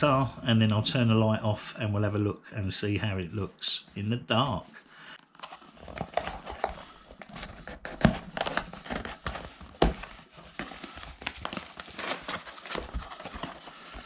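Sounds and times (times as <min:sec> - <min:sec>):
cardboard and plastic rustling: 0:05.3 - 0:14.0.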